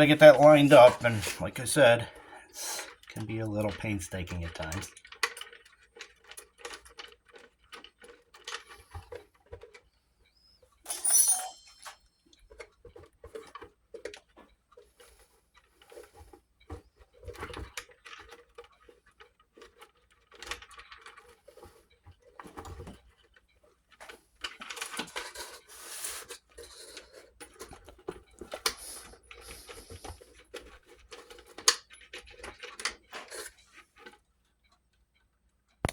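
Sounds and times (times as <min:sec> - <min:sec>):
ringing metal clink: 0:10.9 - 0:12.1
small metallic clicks and taps: 0:35.6 - 0:35.9.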